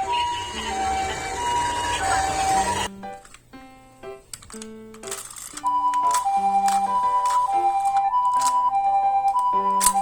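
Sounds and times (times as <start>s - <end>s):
two-tone ambulance siren: 0.0s - 2.9s, 5.8s - 10.0s
background music: 0.0s - 10.0s.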